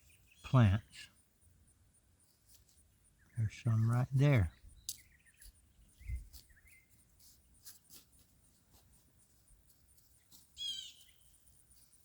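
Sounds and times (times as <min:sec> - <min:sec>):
birds chirping: 0:00.0 - 0:07.6, 0:10.1 - 0:11.8.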